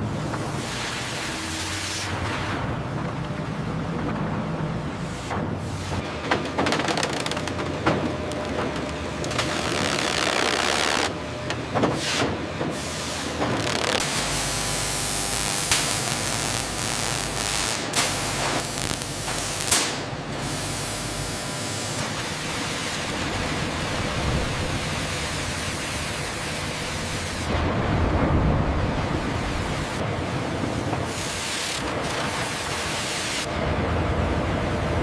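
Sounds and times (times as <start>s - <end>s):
industrial machinery hissing and rumbling: 0.0s - 35.0s
deeper rumble: 27.5s - 30.0s.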